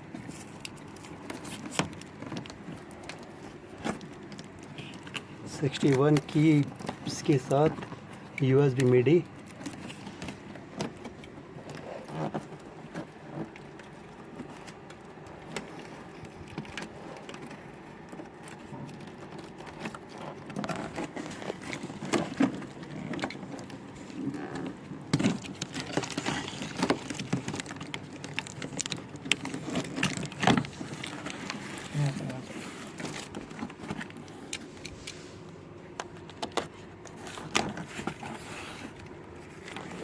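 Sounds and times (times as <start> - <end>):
cardboard box rustling: 18.3 - 40.0.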